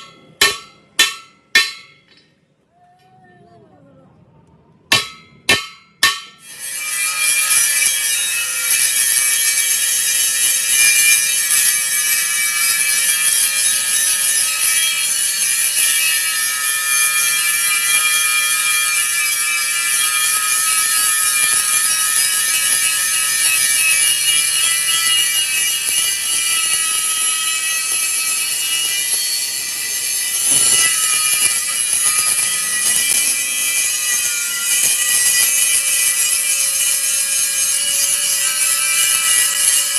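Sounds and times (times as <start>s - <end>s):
sharp knocks: 0.0s - 2.1s, 4.9s - 6.4s
power grinder grinding metal: 5.0s - 39.9s.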